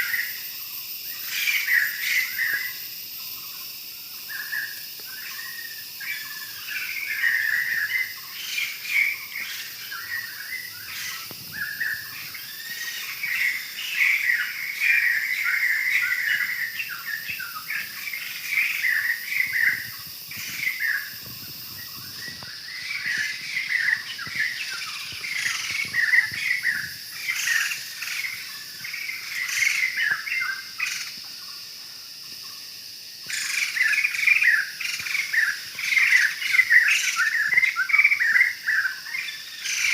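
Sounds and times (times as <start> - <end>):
high-pitched insect drone: 0.0 - 39.9
birds chirping: 0.1 - 31.1.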